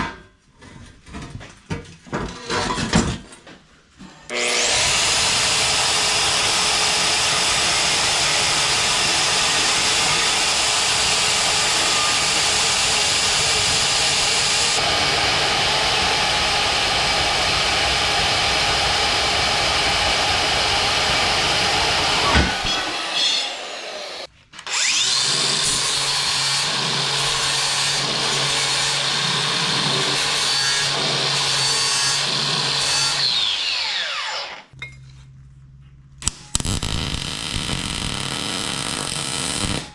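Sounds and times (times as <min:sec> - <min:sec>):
angle grinder grinding steel: 0:04.0 - 0:34.8.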